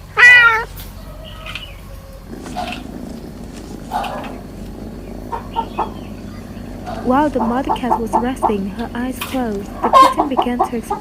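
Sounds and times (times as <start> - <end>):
kitten meowing: 0.0 - 1.6.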